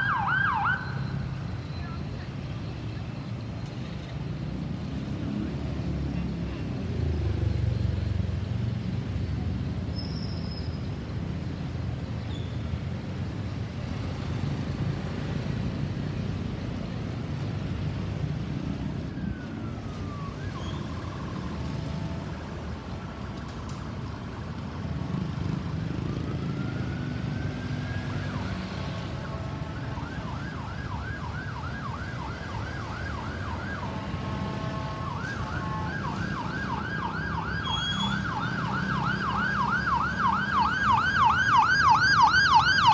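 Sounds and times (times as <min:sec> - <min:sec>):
ambulance siren: 0:00.0 - 0:02.2, 0:18.2 - 0:42.9
road traffic rumble: 0:00.0 - 0:42.9.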